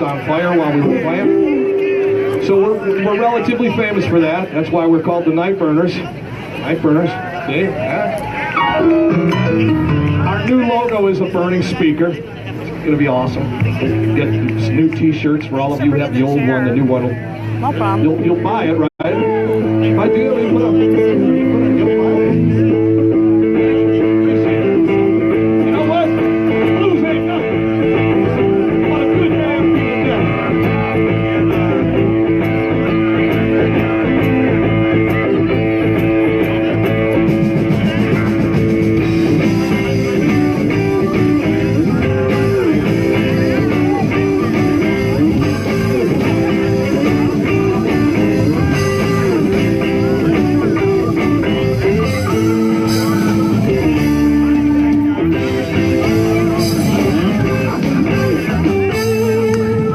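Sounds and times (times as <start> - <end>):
live blues band with lead guitar: 0.0 - 59.9.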